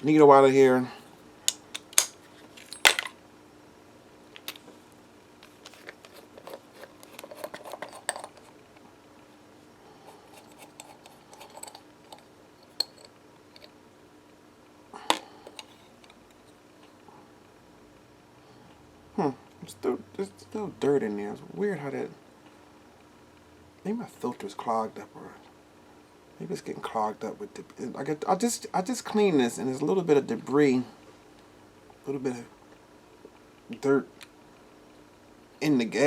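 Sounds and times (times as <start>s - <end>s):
metal parts clinking on workbench: 1.7s - 3.2s, 10.4s - 13.7s.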